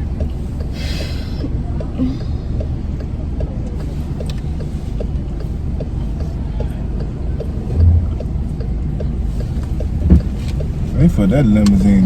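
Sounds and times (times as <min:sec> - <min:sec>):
engine and tyre rumble: 0:00.0 - 0:12.0
faint light ticks: 0:00.1 - 0:10.8, 0:11.5 - 0:12.0
low thump: 0:07.6 - 0:08.7, 0:10.0 - 0:10.4.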